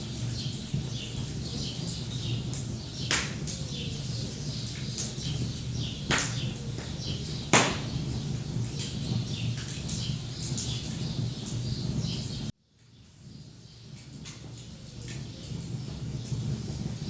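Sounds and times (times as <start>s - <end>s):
small birds chirping: 0.2s - 12.5s
wood fire crackling: 1.8s - 12.5s
sharp pops from fire: 3.1s - 3.6s, 6.1s - 9.0s.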